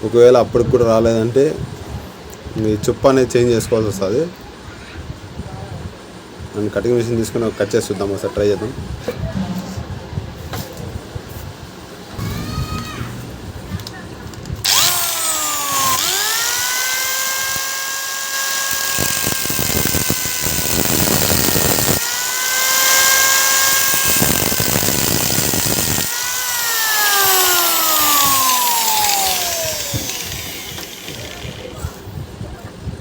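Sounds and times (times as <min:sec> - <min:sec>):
electric cutting tool whine: 0:14.6 - 0:31.8
gritty grinding hiss: 0:14.7 - 0:32.1.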